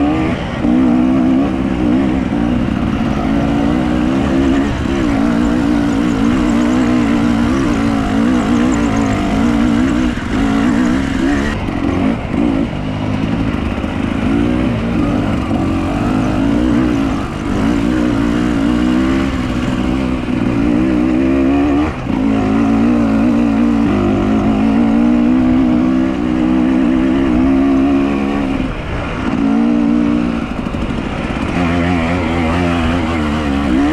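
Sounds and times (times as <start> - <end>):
vehicle engine running: 0.0 - 33.9.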